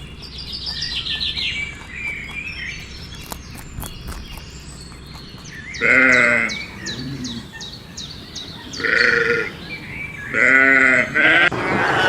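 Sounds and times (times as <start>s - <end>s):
livestock bleating: 5.8s - 7.6s, 8.6s - 12.0s.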